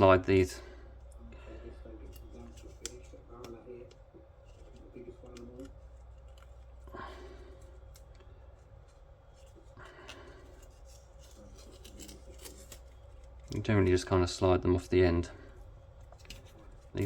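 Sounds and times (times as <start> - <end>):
steady low hum: 0.0 - 17.0
metal tubes scraping: 9.4 - 13.0.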